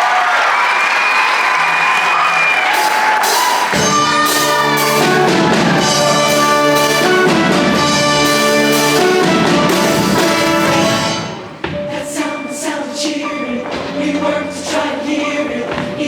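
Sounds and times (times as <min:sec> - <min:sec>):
audience cheering and whooping: 0:00.0 - 0:06.4
band playing brass-led chords: 0:02.8 - 0:11.8.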